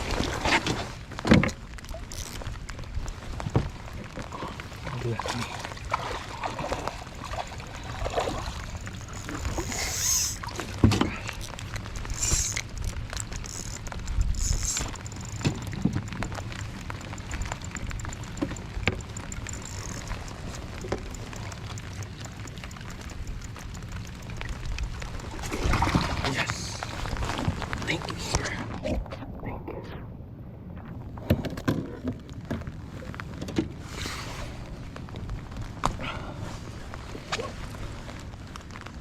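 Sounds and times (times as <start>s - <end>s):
water splashing against kayak: 0.0s - 29.2s, 30.8s - 39.0s
fine rapid ticks: 6.7s - 28.5s
gear knocking against hull: 10.7s - 26.2s.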